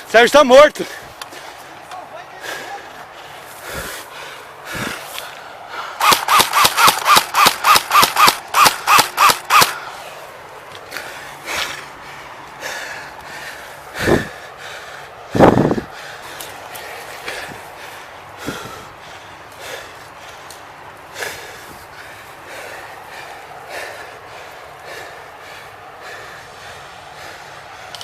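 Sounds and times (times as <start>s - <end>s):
airsoft gun shots with whine: 6.0s - 9.8s.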